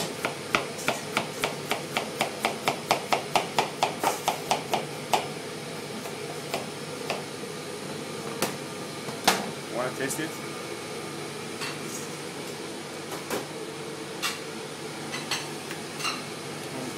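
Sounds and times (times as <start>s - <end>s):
knife chopping on cutting board: 0.0s - 5.3s, 6.0s - 7.3s.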